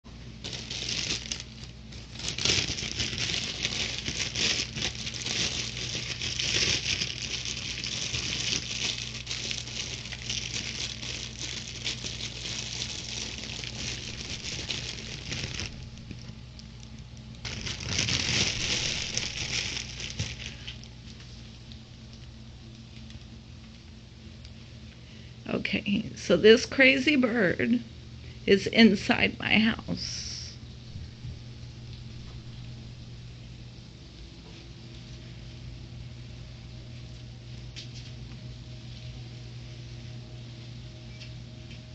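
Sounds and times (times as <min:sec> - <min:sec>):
low steady hum: 0:00.0 - 0:41.9
plastic crinkling and rustling: 0:00.3 - 0:24.0.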